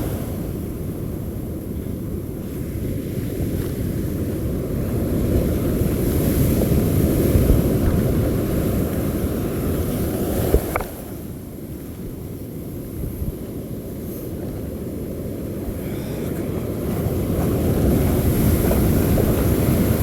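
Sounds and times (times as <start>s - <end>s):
wind rumbling on microphone: 0.0s - 20.0s
surf breaking on beach: 13.7s - 20.0s.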